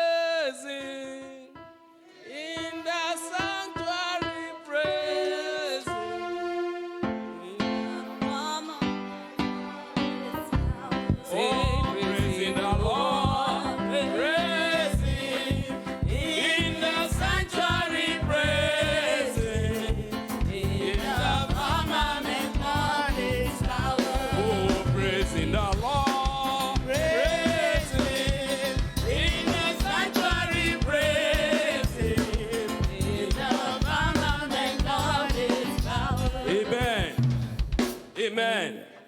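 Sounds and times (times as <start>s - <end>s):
voices singing with vibrato: 2.1s - 6.8s, 7.4s - 37.0s
band with steady drum beat: 19.4s - 38.2s.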